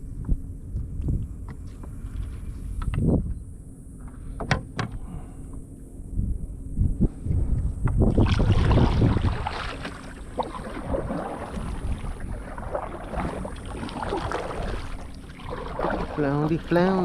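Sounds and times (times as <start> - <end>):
wind buffeting microphone: 6.1 - 17.0
water splashing against kayak: 8.0 - 17.0.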